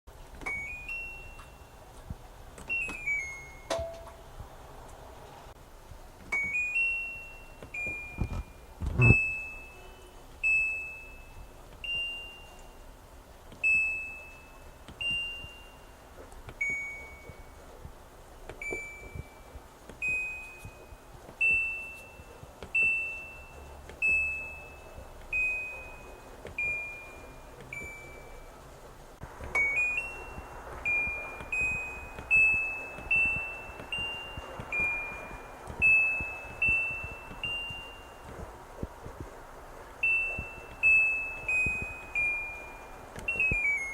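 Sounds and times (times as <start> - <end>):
short electronic beeps: 6.3 - 12.8, 13.6 - 16.0, 16.6 - 17.6, 18.6 - 28.6, 29.5 - 38.5, 40.0 - 43.9.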